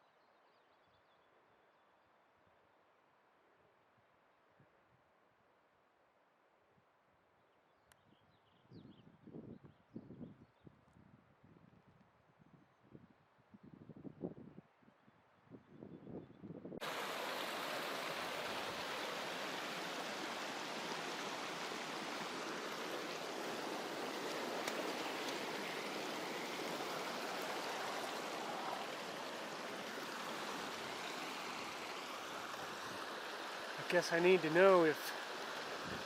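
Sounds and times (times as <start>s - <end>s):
creek water running: 16.8s - 36.0s.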